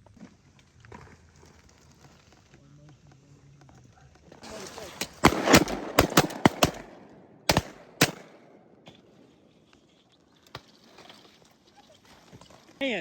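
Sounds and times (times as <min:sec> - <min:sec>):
shotgun shots: 0:04.4 - 0:09.2.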